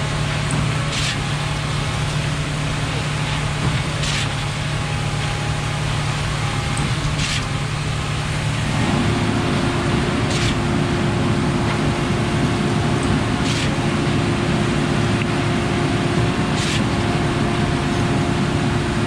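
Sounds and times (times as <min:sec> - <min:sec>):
pump truck engine whining: 0:00.0 - 0:19.0.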